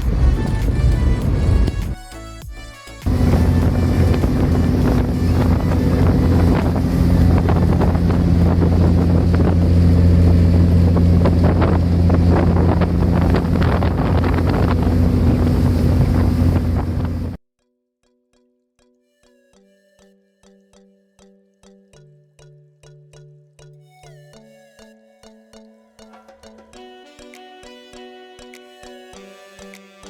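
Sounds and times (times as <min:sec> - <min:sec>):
wind buffeting microphone: 0:00.0 - 0:02.0, 0:03.1 - 0:17.4
boat engine droning: 0:03.0 - 0:17.4
water rushing: 0:03.1 - 0:17.2.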